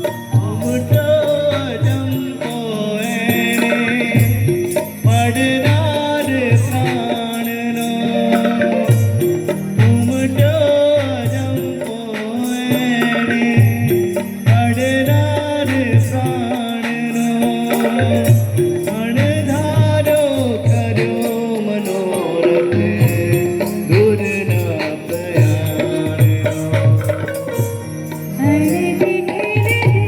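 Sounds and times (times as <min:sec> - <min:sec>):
sharp percussion strikes: 0:00.0 - 0:30.0
low drum beat: 0:08.4 - 0:21.5.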